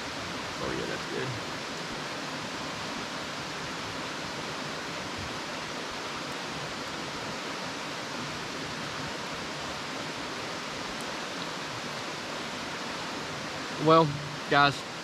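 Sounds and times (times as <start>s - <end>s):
river water rushing: 0.0s - 15.0s.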